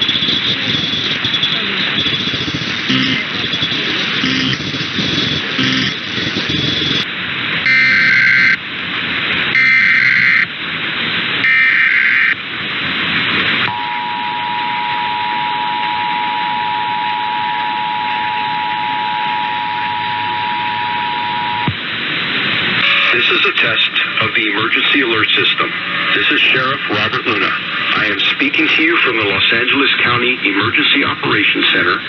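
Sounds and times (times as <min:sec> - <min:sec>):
steady two-tone attention signal: 0:00.0 - 0:07.0, 0:07.7 - 0:08.6, 0:09.6 - 0:10.5, 0:13.7 - 0:21.7, 0:22.8 - 0:23.4
buzzy data bursts: 0:00.0 - 0:07.1, 0:07.7 - 0:08.6, 0:09.5 - 0:10.5, 0:11.4 - 0:12.4
radio music: 0:00.0 - 0:07.1, 0:07.7 - 0:08.6, 0:13.4 - 0:32.0
radio hiss: 0:00.0 - 0:08.7, 0:09.4 - 0:12.4, 0:13.1 - 0:32.0.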